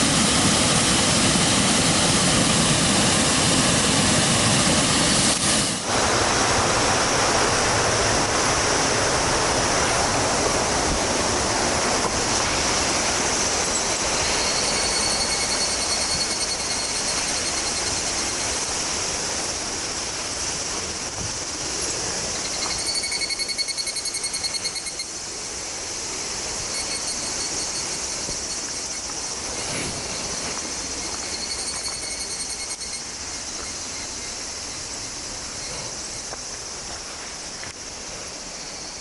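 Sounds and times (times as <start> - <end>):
river water rushing over rocks: 0.0 - 39.0
faint thin high tone: 22.4 - 25.2.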